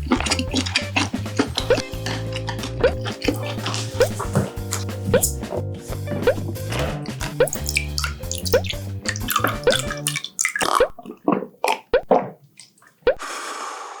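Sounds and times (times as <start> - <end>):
steady bass line: 0.0 - 10.2
bubbly gliding synth notes: 0.0 - 10.6.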